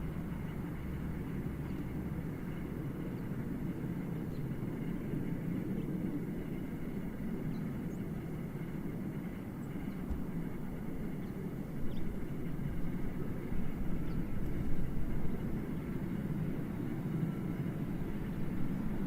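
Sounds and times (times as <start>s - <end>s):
distant jet aircraft rumble: 0.0s - 19.0s.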